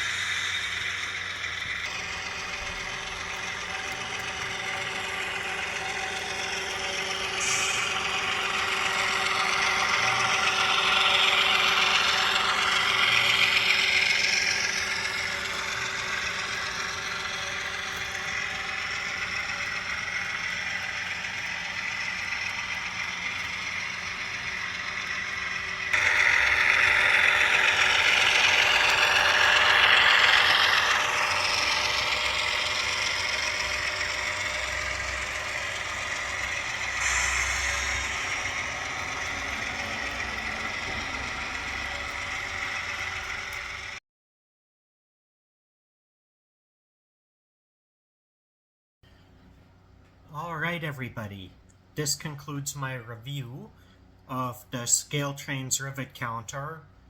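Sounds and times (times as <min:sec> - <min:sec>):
model locomotive engine: 0:00.0 - 0:44.0, 0:50.3 - 0:57.0
wheels rattling on rails: 0:00.0 - 0:44.0.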